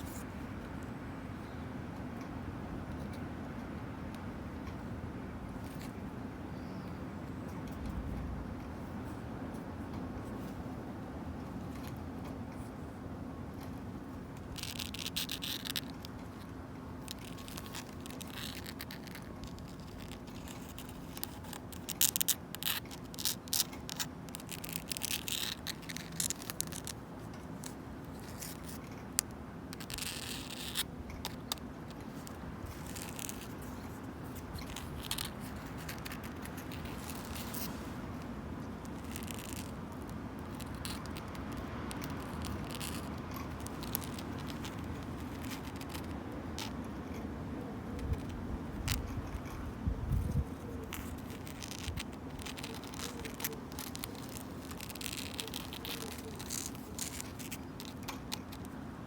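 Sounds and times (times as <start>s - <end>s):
low background noise: 0.0s - 59.0s
fingernails scratching wood: 50.3s - 58.7s.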